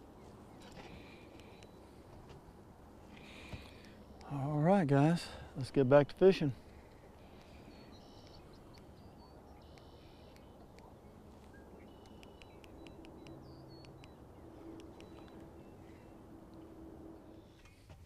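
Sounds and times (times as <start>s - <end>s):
low steady hum: 0.0s - 18.0s
faint bird chirps: 7.2s - 16.2s.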